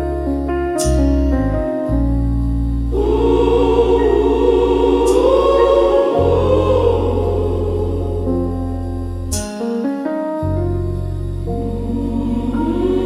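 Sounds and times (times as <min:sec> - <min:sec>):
sustained bass note: 0:02.3 - 0:09.4
instrumental accompaniment: 0:02.8 - 0:10.4
choir singing held chord: 0:02.9 - 0:09.4, 0:11.6 - 0:13.0.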